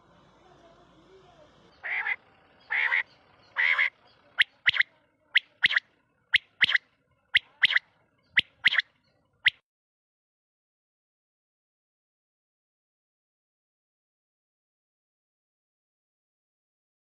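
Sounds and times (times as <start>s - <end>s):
quail calling: 1.8s - 9.6s.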